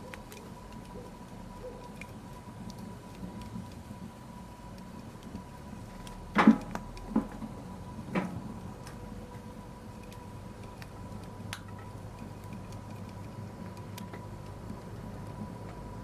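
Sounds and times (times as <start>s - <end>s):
wood fire crackling: 0.0s - 16.0s
sharp pops of fire: 4.8s - 9.0s, 10.9s - 12.9s.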